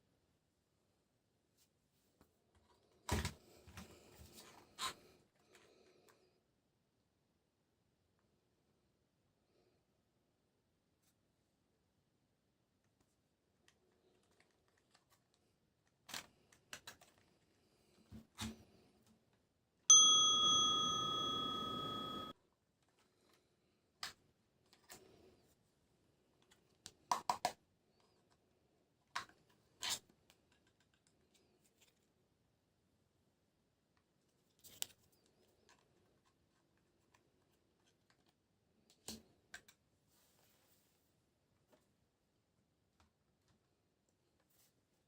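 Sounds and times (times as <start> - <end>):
bright bell ding: 19.9 - 22.3.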